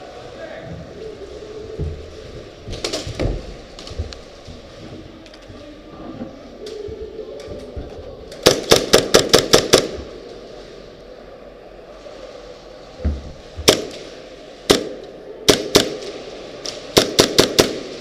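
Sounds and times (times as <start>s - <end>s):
airsoft guns firing: 8.4s - 10.1s, 13.7s - 14.1s, 14.7s - 18.0s.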